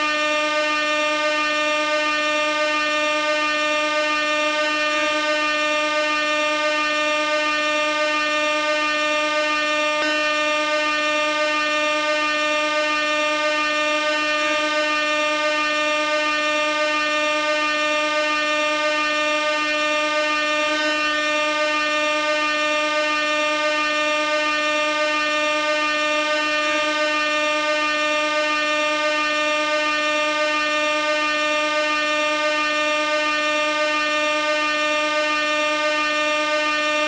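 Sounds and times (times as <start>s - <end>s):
air horn blast: 0.0s - 37.0s.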